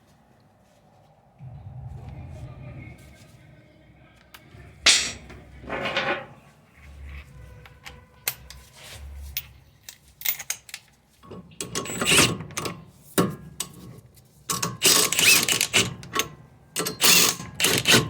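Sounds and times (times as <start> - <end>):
metal tools clicking and clanking: 4.9 - 6.4, 9.4 - 18.0.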